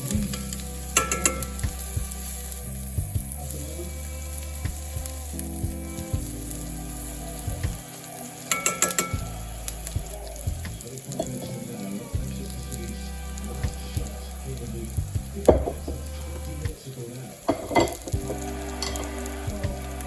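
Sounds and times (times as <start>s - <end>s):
food sizzling in a pan: 0.0s - 20.0s
utensil clinking against pan: 1.0s - 1.6s, 8.5s - 9.2s, 17.5s - 19.1s.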